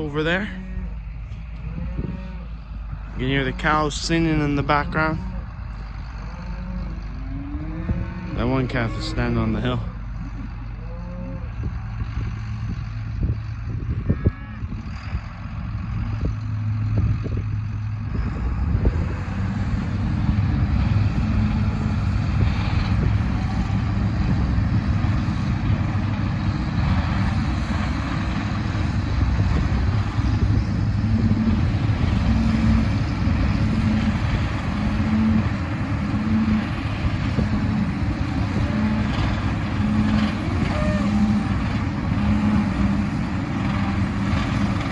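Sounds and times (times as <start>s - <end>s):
low pulsing hum: 0.0s - 44.9s
tractor engine running: 0.0s - 44.9s
bale processor shredding straw: 17.5s - 44.9s.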